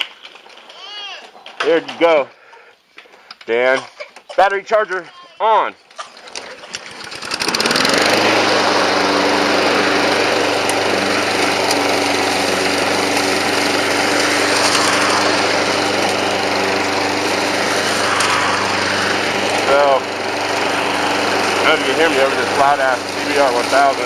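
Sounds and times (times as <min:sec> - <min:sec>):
lawnmower engine pull-started: 0:05.9 - 0:24.0.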